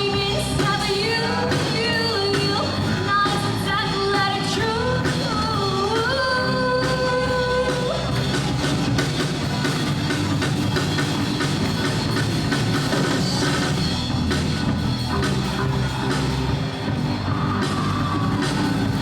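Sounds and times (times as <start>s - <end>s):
rock band playing: 0.0s - 19.0s.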